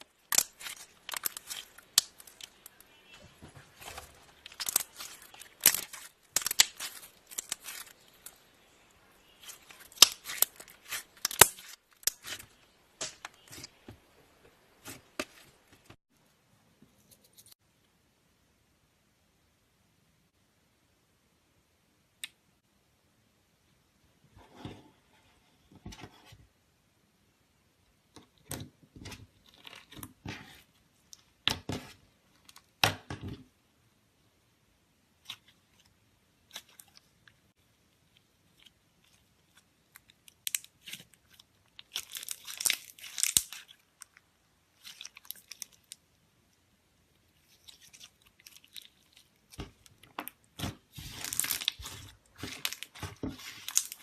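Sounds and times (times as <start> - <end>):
slime crackling and popping: 0.0 - 2.8, 3.8 - 13.7, 38.1 - 46.0, 47.4 - 54.0.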